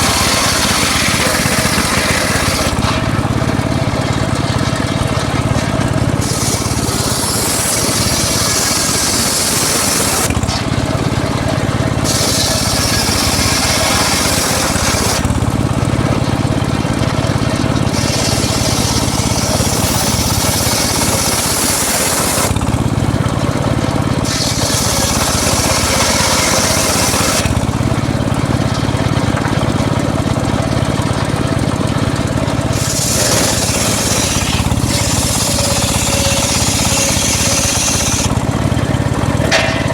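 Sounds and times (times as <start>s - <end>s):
circular saw cutting wood: 0.0s - 31.5s, 32.2s - 39.9s.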